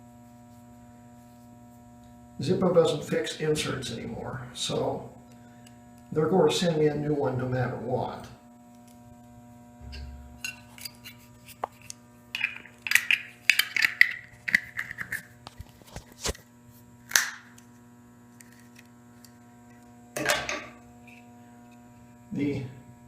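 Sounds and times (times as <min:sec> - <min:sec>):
electrical hum: 0:00.0 - 0:23.0.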